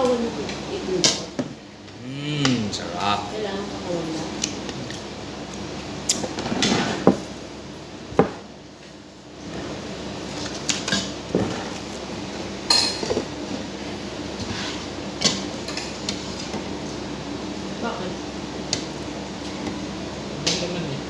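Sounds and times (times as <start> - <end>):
utensils clinking on dishes: 12.7 - 13.3.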